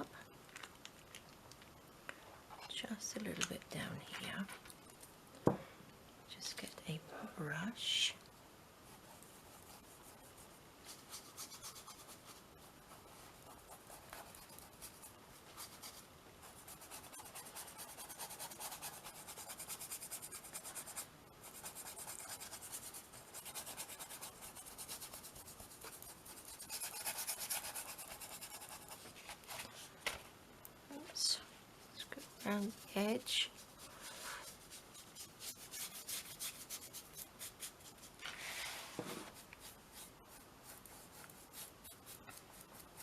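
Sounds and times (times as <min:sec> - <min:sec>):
paintbrush scrubbing on canvas: 0:08.9 - 0:29.8, 0:32.0 - 0:43.0.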